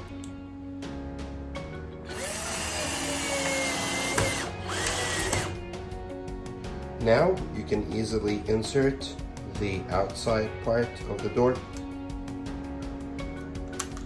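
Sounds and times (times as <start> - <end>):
background music: 0.0 - 14.0
power drill whining: 2.1 - 5.7.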